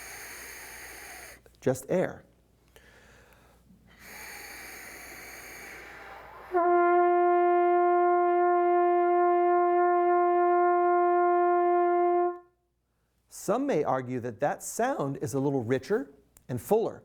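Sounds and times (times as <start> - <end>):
breath rushing through trumpet: 0.0 - 1.5, 2.8 - 12.6
trumpet note held: 6.5 - 12.5.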